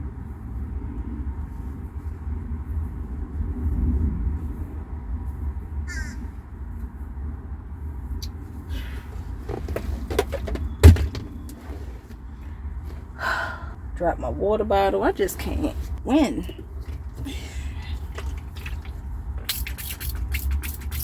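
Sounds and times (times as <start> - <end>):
water bottle hitting floor: 9.5 - 11.6.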